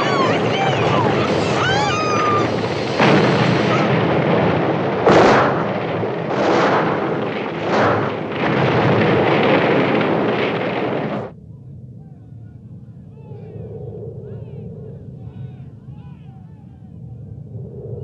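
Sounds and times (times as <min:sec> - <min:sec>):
explosion rumbling blast: 0:00.0 - 0:12.0.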